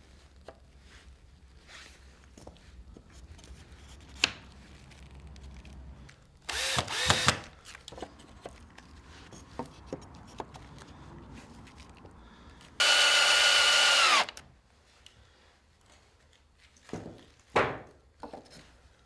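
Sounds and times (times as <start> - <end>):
cordless drill running: 6.5 - 7.5, 12.8 - 14.4.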